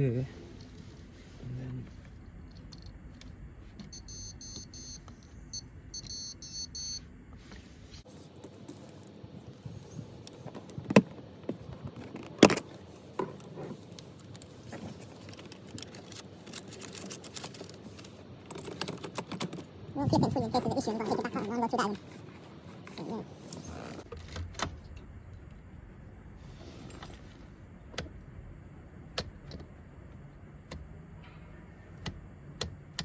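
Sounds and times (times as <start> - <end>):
faint high-pitched beeping: 3.9 - 7.1.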